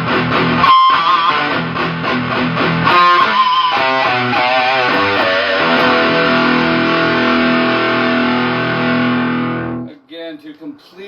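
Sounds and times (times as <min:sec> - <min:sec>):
electric guitar playing: 0:00.0 - 0:09.9.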